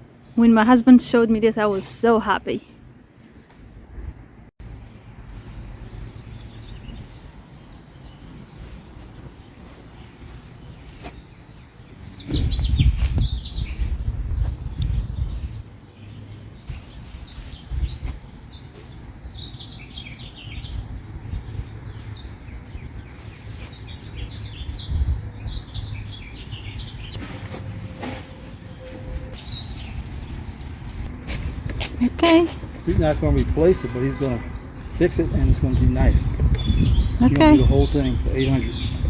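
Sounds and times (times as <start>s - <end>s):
songbirds chirping: 0.0s - 39.0s
low rumble on microphone: 11.8s - 15.7s, 34.9s - 39.0s.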